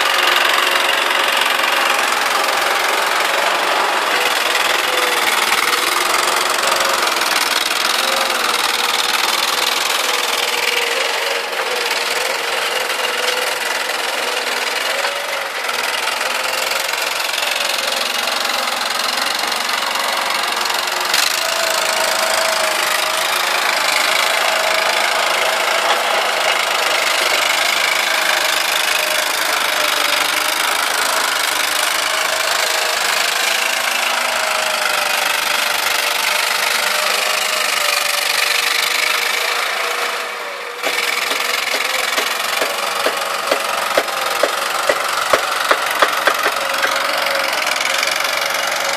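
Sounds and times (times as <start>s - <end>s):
skid steer engine running: 0.0s - 48.9s
sharp clicks or knocks: 42.2s - 47.0s.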